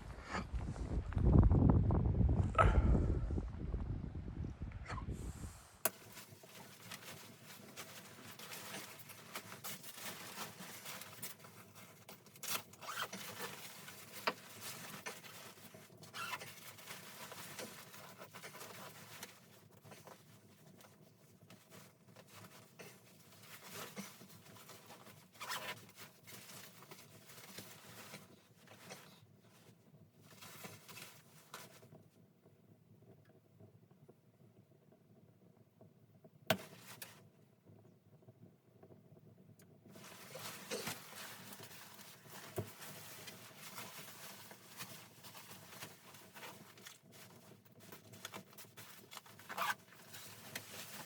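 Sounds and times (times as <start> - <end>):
scraping rustles: 5.2 - 32.0, 39.9 - 51.0.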